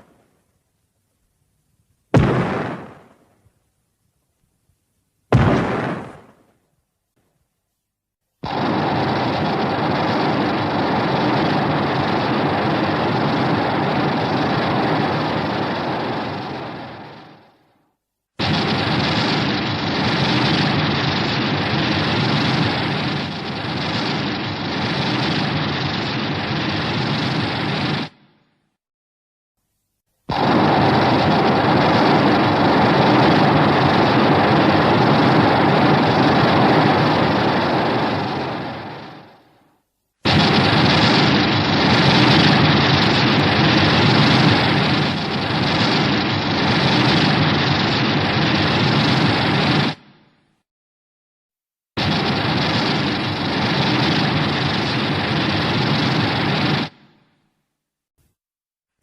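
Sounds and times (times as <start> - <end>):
dense steady rushing noise: 8.4 - 17.8, 18.4 - 28.2, 30.3 - 39.6, 40.3 - 50.3, 52.0 - 57.1.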